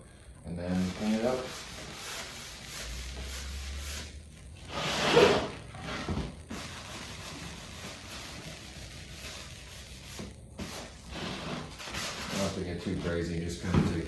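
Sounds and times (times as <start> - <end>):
sanding block on wood: 0.8 - 4.1, 6.6 - 12.6.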